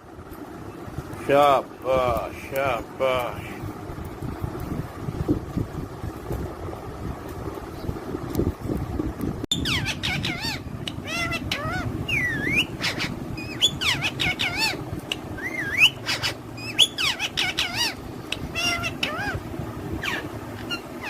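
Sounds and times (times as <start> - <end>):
parrots squawking and whistling: 9.5 - 21.0.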